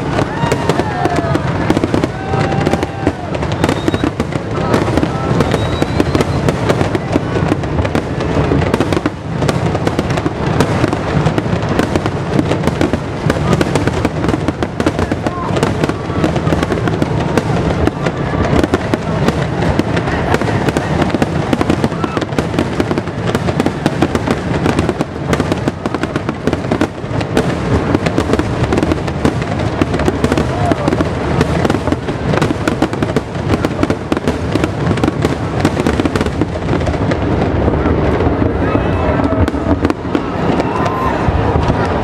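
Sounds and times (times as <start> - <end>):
fireworks bangs and crackling: 0.0 - 42.0.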